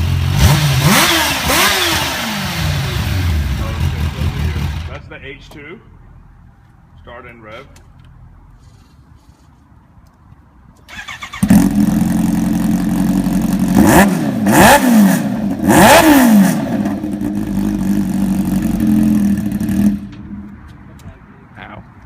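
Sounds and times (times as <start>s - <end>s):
motorcycle engine idling and revving: 0.0s - 5.1s, 10.9s - 21.8s
motorcycle engine cranking: 10.9s - 12.2s.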